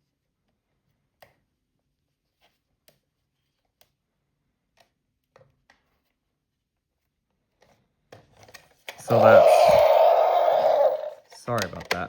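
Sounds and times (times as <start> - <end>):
plastic toy clicks and taps: 11.5 - 12.0.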